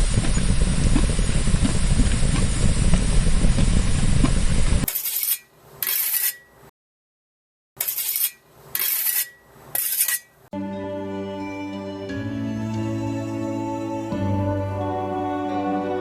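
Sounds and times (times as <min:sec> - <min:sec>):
metallic clinking and scraping: 0:04.9 - 0:06.5, 0:07.8 - 0:10.4
soft melodic music: 0:10.6 - 0:16.0.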